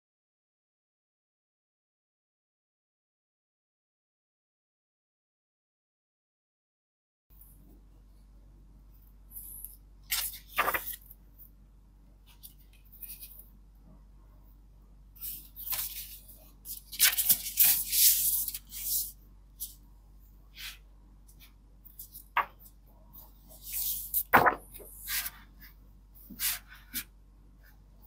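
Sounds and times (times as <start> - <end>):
book pages turning: 10.1 - 11.2, 12.3 - 13.4, 15.2 - 19.7, 23.6 - 25.4
paper rustling: 10.1 - 11.2, 12.3 - 13.4, 15.2 - 19.7, 22.0 - 22.7, 23.6 - 25.4.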